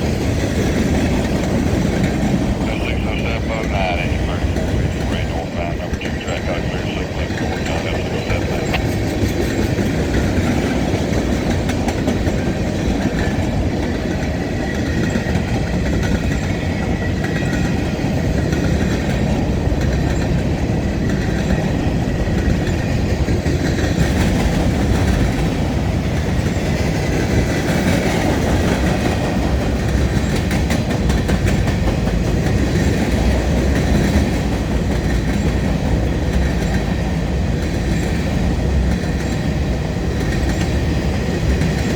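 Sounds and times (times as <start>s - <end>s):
train rumble: 0.0s - 41.9s
train wheels clicking over rail joints: 22.3s - 41.9s.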